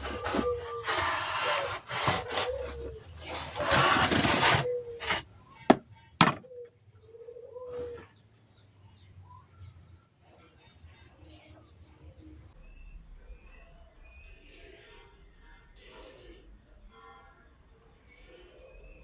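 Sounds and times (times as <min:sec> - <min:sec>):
hand saw scraping: 0:00.0 - 0:05.2
doves cooing: 0:00.0 - 0:08.3
small birds chirping: 0:04.7 - 0:13.0
sharp knocks: 0:05.7 - 0:06.5.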